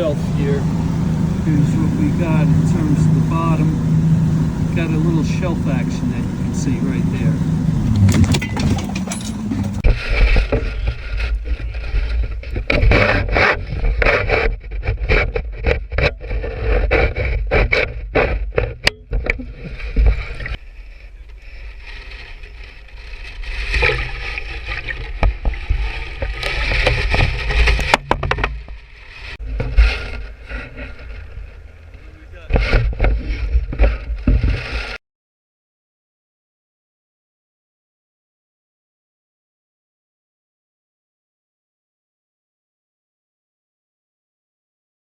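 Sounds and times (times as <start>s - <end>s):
water slapping against hull: 21.5s - 35.0s.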